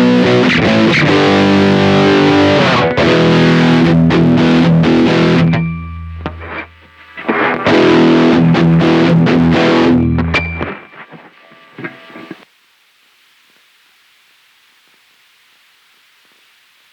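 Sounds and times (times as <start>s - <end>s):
distorted electric guitar chords: 0.0s - 12.4s.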